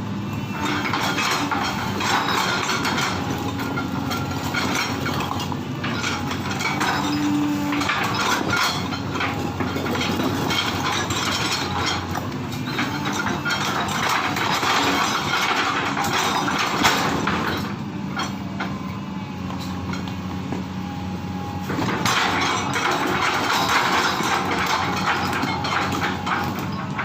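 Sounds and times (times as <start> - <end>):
diesel engine droning: 0.0 - 27.0
excavator clanking and scraping: 0.1 - 27.0.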